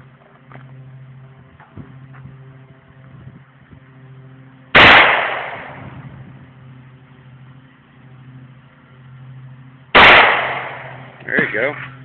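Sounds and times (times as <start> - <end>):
gunshot with echo: 4.8 - 5.9, 10.0 - 11.1.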